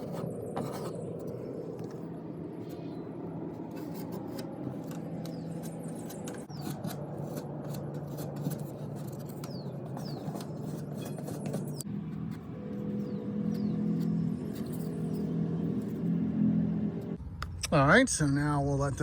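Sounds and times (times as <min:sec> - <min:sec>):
steady low hum: 0:00.0 - 0:19.0
putty knife scraping and clicking: 0:03.7 - 0:11.8.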